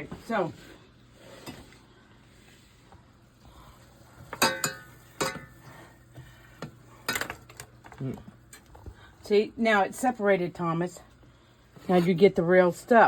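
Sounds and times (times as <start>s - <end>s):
faint kitchen clatter: 0.0s - 13.0s
metal utensils clinking on dishes: 4.3s - 5.6s, 7.0s - 7.7s.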